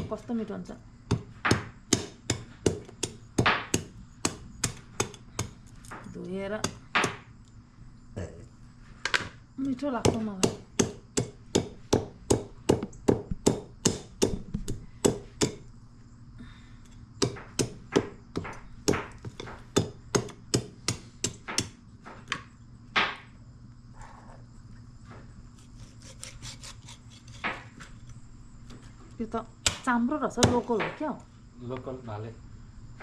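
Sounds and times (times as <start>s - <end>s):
knife chopping meat: 1.1s - 5.6s, 10.0s - 15.6s, 17.2s - 21.7s, 25.8s - 27.6s.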